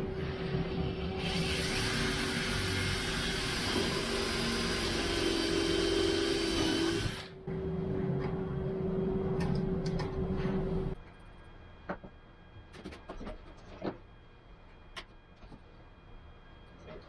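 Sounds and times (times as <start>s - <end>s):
power tool humming and hissing: 0.4s - 7.4s.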